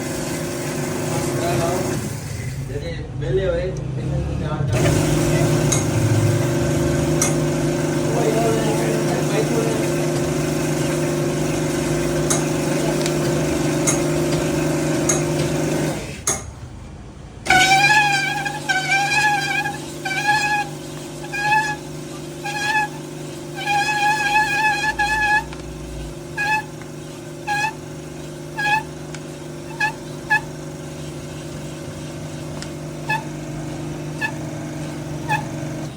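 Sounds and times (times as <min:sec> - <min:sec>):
car engine humming: 0:10.2 - 0:35.9
high wavering toots: 0:17.5 - 0:26.8.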